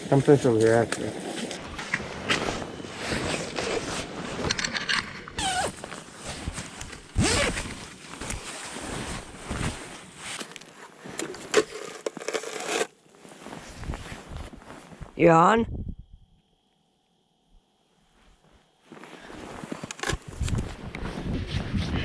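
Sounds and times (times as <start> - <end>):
gear rustling and scraping: 0.3 - 15.0
zipper-like rasp: 5.4 - 7.8.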